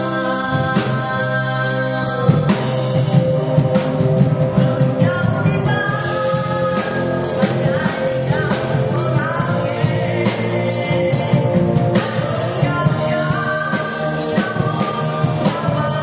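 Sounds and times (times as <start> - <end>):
live rock band playing: 0.0 - 16.0
person singing lead: 4.6 - 16.0.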